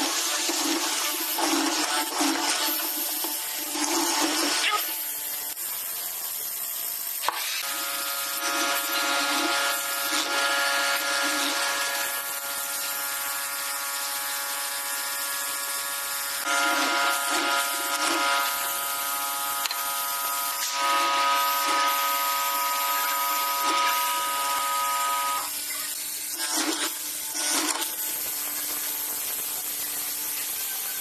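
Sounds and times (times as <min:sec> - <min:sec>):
motor whine: 0:00.0 - 0:31.0
power tool cutting wood: 0:00.0 - 0:31.0.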